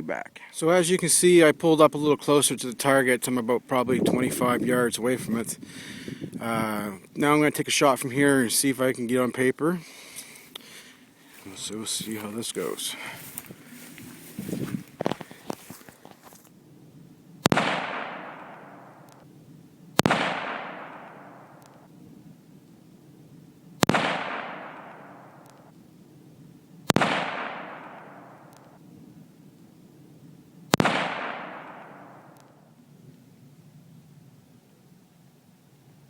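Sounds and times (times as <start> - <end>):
rifle shots with echo: 17.4 - 19.3, 20.0 - 21.9, 23.8 - 25.7, 26.8 - 28.8, 30.7 - 32.8.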